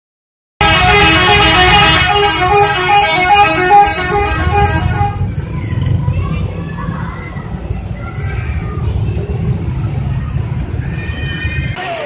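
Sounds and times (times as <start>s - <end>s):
multi-tone bus horn tune: 0.6s - 5.3s.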